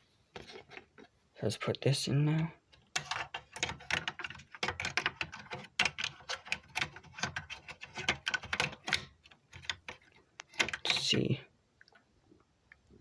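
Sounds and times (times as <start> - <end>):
plastic and metal parts rattling: 2.7 - 11.3.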